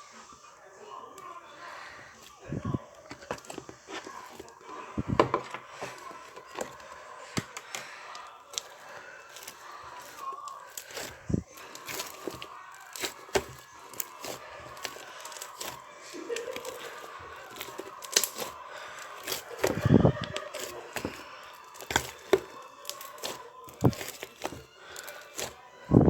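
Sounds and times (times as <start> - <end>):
slime squelching thuds: 8.5 - 26.0.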